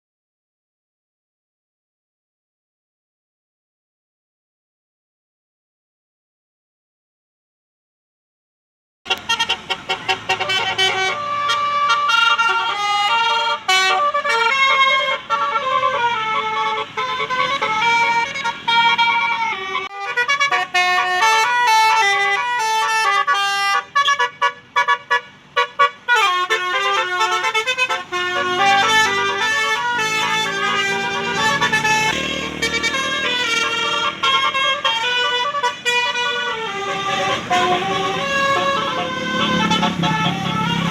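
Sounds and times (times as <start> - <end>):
multi-tone bus horn tune: 9.1 - 40.9.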